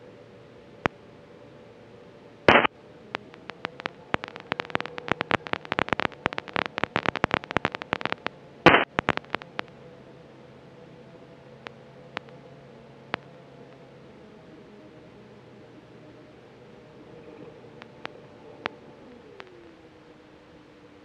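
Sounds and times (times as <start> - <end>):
radio hiss bursts: 2.5 - 9.7
radio crackles and pops: 2.5 - 9.8, 11.6 - 12.4, 13.1 - 13.9, 17.2 - 20.2.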